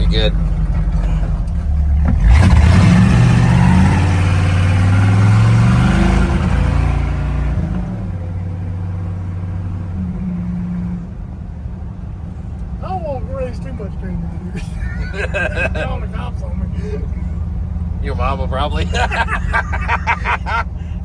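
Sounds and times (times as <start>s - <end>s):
pickup engine revving: 0.0s - 11.2s, 12.5s - 21.0s.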